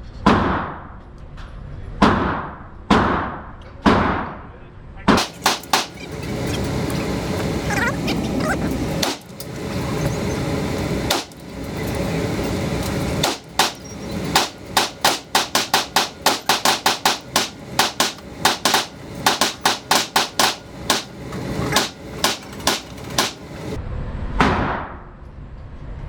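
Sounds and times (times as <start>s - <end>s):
rapid pistol shots: 5.1s - 6.2s, 9.0s - 9.4s, 13.2s - 23.4s.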